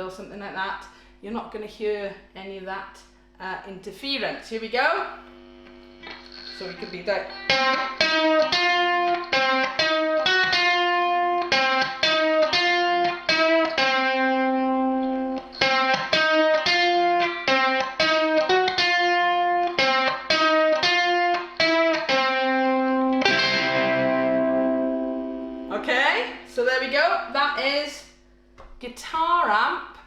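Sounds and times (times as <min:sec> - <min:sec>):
overdriven electric ukulele: 0:07.3 - 0:25.8.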